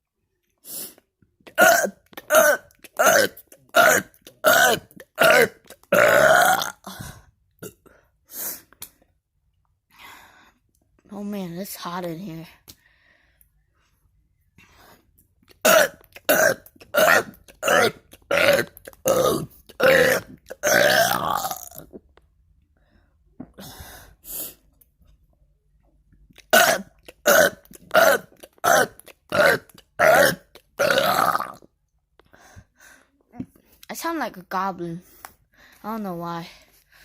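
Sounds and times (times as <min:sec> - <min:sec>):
person burping: 0:01.5 - 0:07.9, 0:15.5 - 0:22.0, 0:26.4 - 0:31.7.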